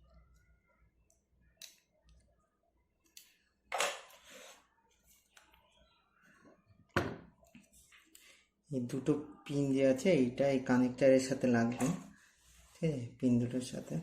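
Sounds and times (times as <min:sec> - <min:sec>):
faint scrapes: 0:04.1 - 0:05.3.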